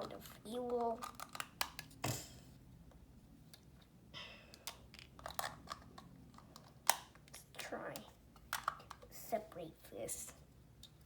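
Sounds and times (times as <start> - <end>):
plastic bricks clicking: 4.6 - 7.0, 8.4 - 9.1.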